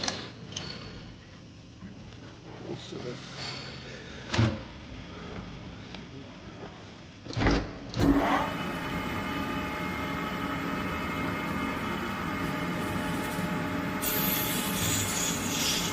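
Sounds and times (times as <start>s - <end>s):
lathe motor and spindle running: 8.0s - 15.9s
hiss: 14.0s - 15.9s.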